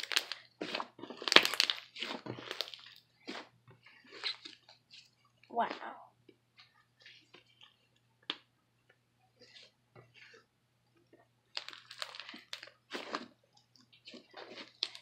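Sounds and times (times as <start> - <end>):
slime squeezed clicking and popping: 0.0 - 0.4.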